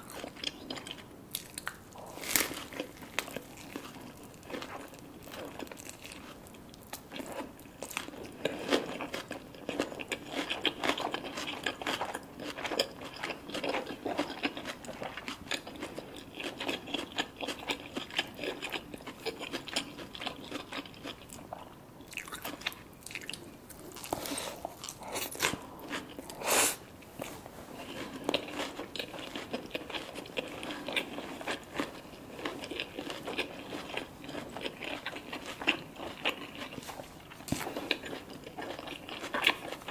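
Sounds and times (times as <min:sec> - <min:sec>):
crunchy food being chewed: 0:00.0 - 0:39.9.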